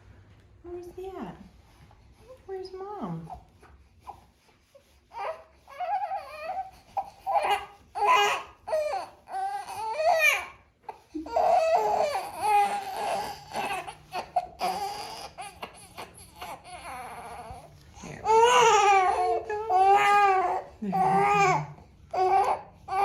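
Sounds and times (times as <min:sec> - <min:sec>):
infant vocalizing: 0:05.2 - 0:23.0.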